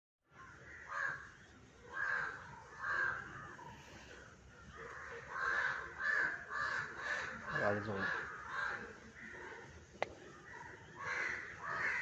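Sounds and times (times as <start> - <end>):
harsh animal calls: 1.9 - 9.7.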